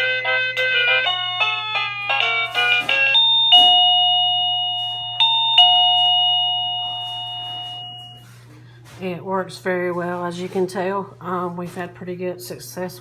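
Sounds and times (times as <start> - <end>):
electronic doorbell chime: 0.0 - 8.4.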